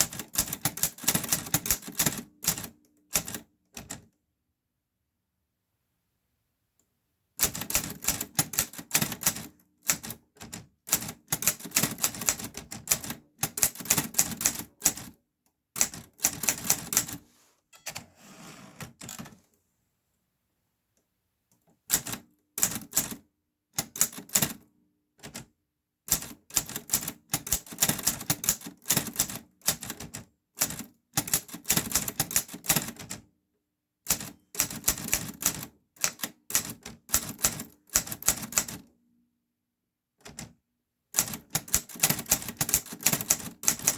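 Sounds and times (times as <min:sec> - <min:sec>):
soft rasping: 0:17.8 - 0:18.9.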